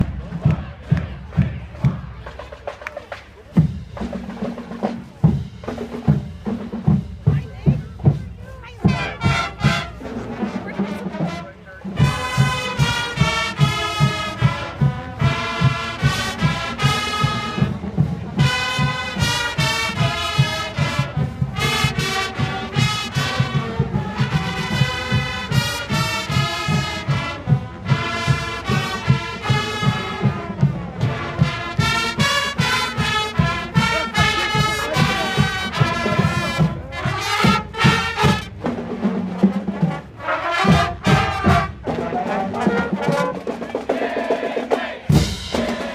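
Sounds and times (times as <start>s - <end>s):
brass band playing: 0.0s - 45.9s.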